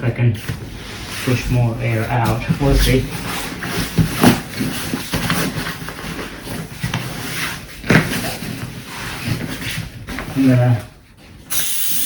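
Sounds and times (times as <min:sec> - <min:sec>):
foam sleeping pad rustling: 0:00.7 - 0:09.7.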